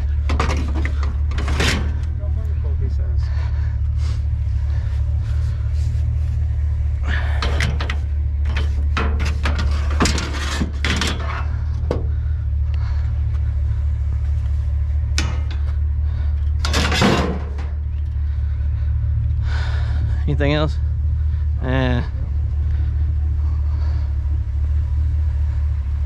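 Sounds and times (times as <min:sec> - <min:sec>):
steady low rumble: 0:00.0 - 0:26.0
scrap metal clattering: 0:00.2 - 0:02.2, 0:07.2 - 0:12.0, 0:16.5 - 0:17.9.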